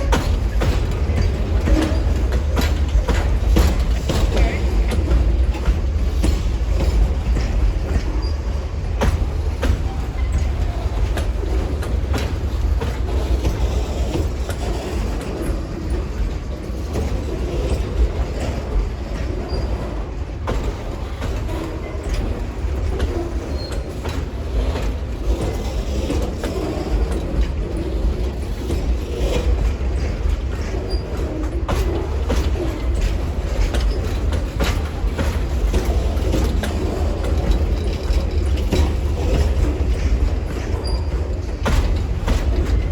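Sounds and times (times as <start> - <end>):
wheels knocking over rail joints: 0.0 - 19.6, 20.4 - 42.9
train rolling past rumble: 0.0 - 42.9
faint high wheel squeaks: 40.0 - 41.8.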